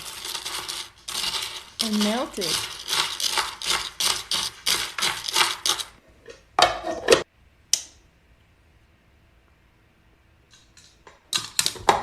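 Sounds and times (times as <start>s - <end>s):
utensil scraping pot: 0.0s - 7.2s.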